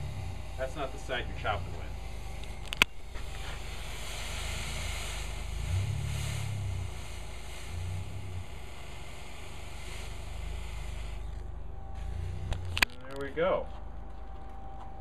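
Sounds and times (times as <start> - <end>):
forge rumble with hiss: 0.0 - 14.1.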